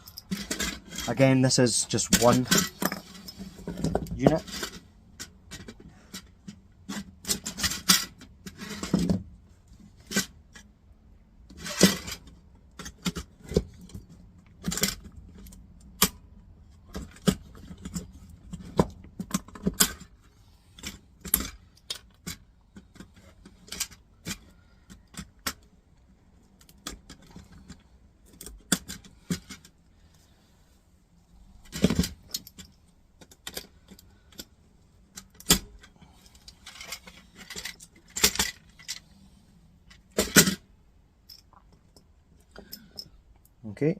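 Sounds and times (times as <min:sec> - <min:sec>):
small metallic clicks and clinks: 0:00.0 - 0:01.1, 0:41.2 - 0:43.6.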